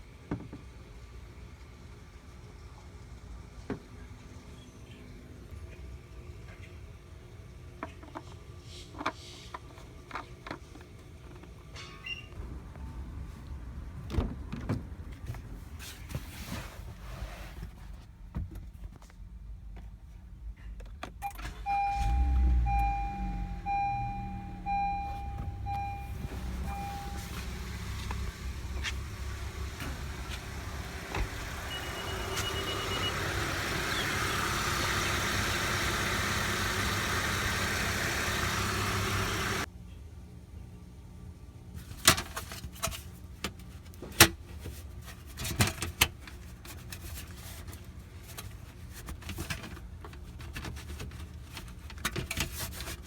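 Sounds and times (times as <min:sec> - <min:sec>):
car engine idling: 0:21.4 - 0:39.7
brief higher beep: 0:21.7 - 0:27.4
chime beeping: 0:21.7 - 0:27.4.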